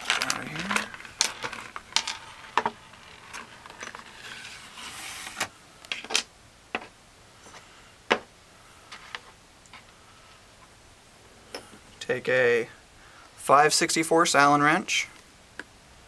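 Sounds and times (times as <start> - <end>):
small parts clicking and knocking: 0.0 - 4.0
soft hiss: 0.0 - 16.0.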